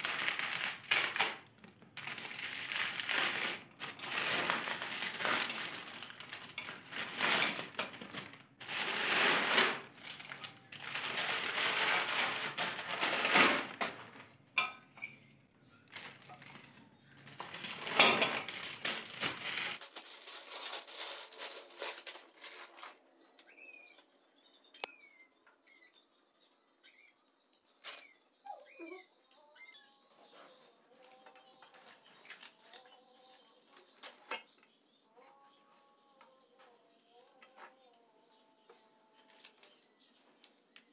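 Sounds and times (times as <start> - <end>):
packaging rustling and crinkling: 0.0 - 14.3, 15.9 - 23.0
birds chirping: 23.3 - 38.9.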